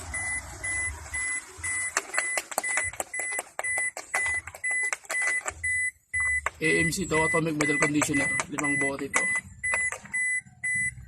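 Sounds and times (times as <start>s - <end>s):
vehicle beeper beeping: 0.0s - 11.0s
sharp clicks and taps: 2.0s - 6.6s, 7.5s - 10.2s.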